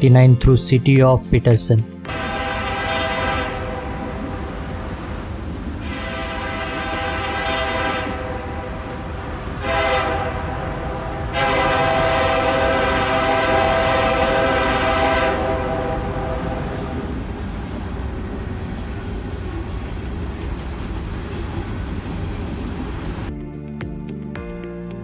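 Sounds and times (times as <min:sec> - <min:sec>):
locomotive air horn blasts: 0:02.1 - 0:04.6, 0:05.8 - 0:09.0, 0:09.6 - 0:17.0.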